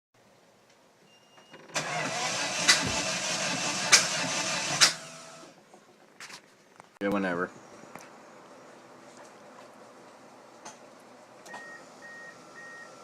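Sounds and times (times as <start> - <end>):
car engine cranking on starter: 1.7 - 5.6.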